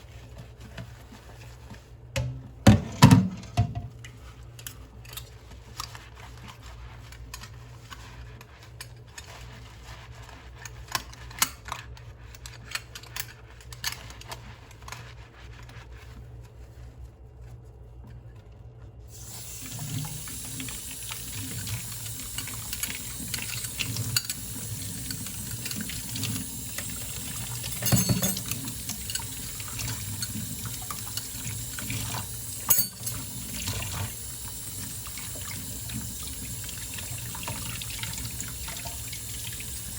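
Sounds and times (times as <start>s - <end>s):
tap water running into sink: 19.1s - 39.9s
dishes clinking: 27.6s - 29.3s, 32.6s - 33.3s.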